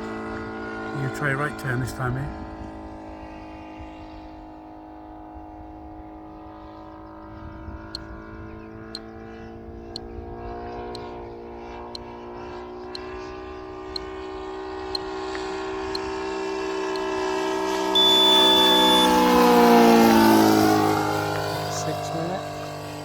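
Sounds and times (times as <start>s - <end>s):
model plane engine running: 0.0s - 23.0s
brief high beep: 18.0s - 19.8s.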